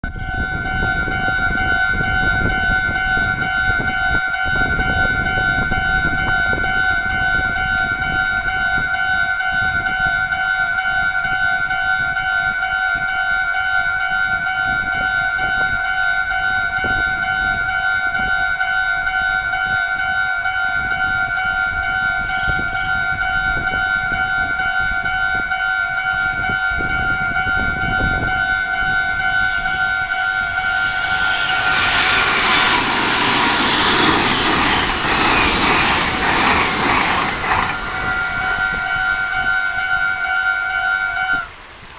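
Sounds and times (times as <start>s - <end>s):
level-crossing warning bell: 0.0s - 41.6s
low rumble: 30.0s - 39.4s.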